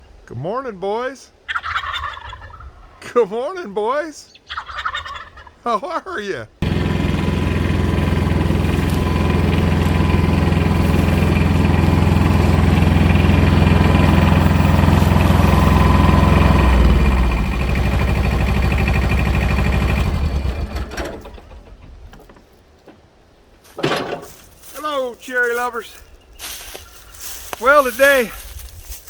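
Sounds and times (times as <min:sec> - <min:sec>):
engine running and winding down: 0:06.6 - 0:21.6.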